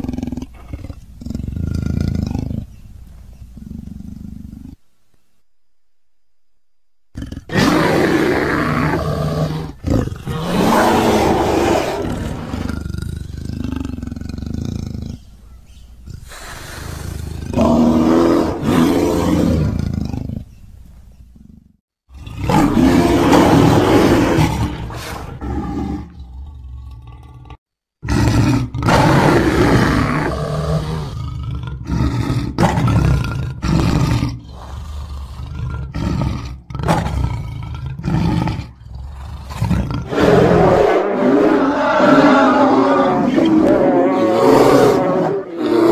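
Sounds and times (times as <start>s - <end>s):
big cat roaring and growling: 7.2s - 15.2s, 16.0s - 20.5s, 21.4s - 45.9s.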